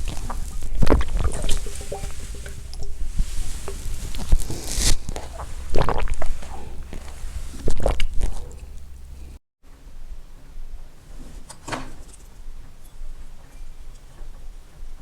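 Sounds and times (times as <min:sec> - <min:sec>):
person gulping water: 0:00.0 - 0:09.4
low steady hum: 0:00.0 - 0:11.4.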